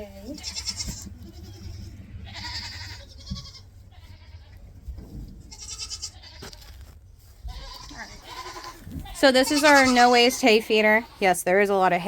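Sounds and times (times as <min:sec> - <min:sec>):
goats bleating: 0:00.1 - 0:04.7, 0:05.5 - 0:06.8, 0:07.4 - 0:11.4.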